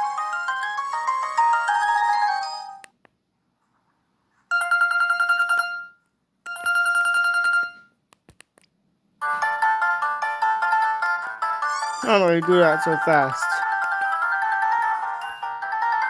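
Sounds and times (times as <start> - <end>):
ringtone melody: 0.0 - 2.8, 9.2 - 16.0
phone ringtone warbling: 11.6 - 16.0.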